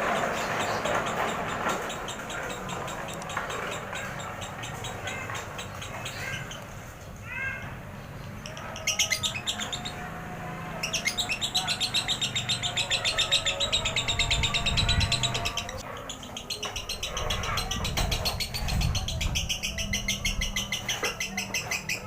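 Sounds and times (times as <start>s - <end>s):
lovebird rapid chatter: 0.0s - 6.7s.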